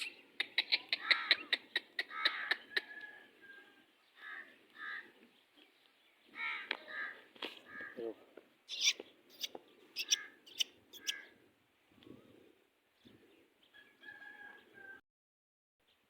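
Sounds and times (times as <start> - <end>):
birds clicky calls: 0.0 - 3.2, 6.4 - 8.1, 8.7 - 11.3
birds harsh calls: 0.0 - 11.4.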